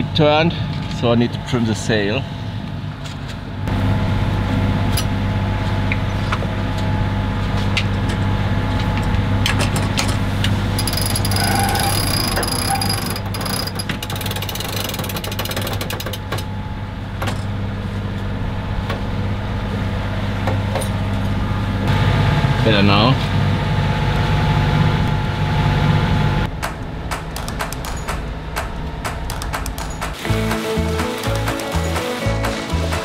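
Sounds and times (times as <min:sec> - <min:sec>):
diesel engine humming: 0:03.7 - 0:22.4
sheet winch ratcheting: 0:10.8 - 0:16.4, 0:26.6 - 0:30.2.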